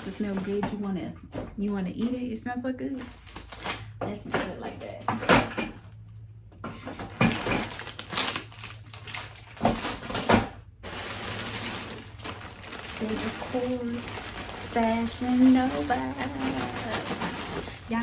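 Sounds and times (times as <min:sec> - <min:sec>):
packaging rustling: 0:03.0 - 0:04.0, 0:06.8 - 0:18.0.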